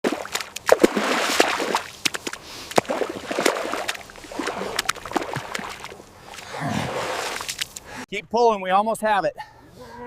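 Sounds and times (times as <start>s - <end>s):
sharp mud splats: 0.0s - 7.9s
sloshing in mud and water: 0.0s - 8.0s.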